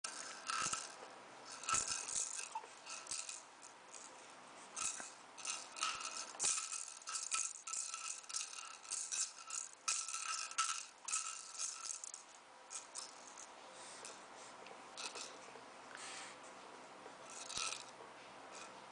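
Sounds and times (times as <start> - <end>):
toy rattle shaken: 0.0 - 4.1, 4.8 - 14.2, 15.0 - 15.4, 17.3 - 18.0.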